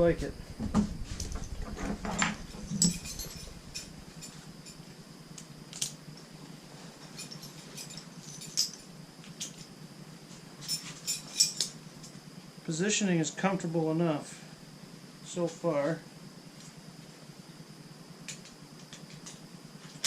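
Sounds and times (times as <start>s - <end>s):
faint steady hum: 0.0s - 20.0s
metallic clinks and rattles: 1.1s - 4.8s, 7.0s - 9.7s, 10.6s - 12.2s.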